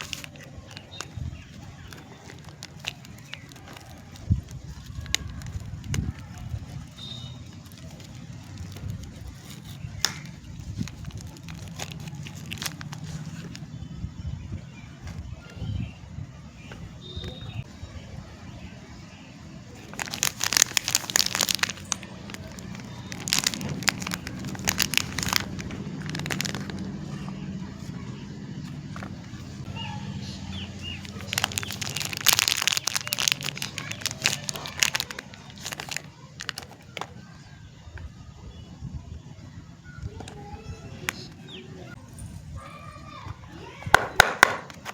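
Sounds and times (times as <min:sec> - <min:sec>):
wrapper crackling and tearing: 0:00.0 - 0:13.7, 0:19.8 - 0:27.3, 0:30.8 - 0:37.1.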